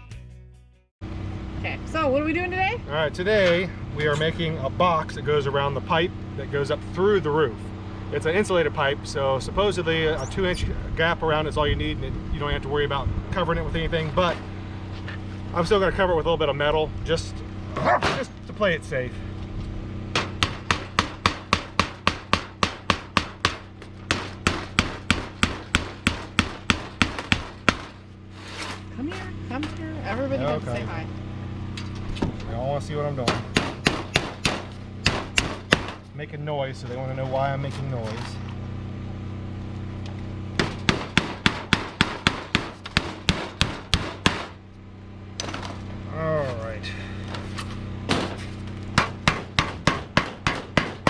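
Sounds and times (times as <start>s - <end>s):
steady low hum: 1.2s - 51.0s
hammer driving a nail: 20.2s - 28.0s, 33.3s - 36.0s, 40.6s - 44.6s, 49.0s - 51.0s
hammer blows: 33.2s - 36.1s.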